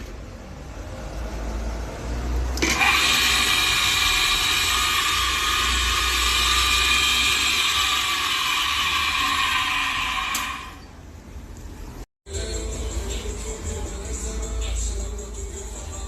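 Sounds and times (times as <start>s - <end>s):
blender motor whining: 2.5s - 10.9s.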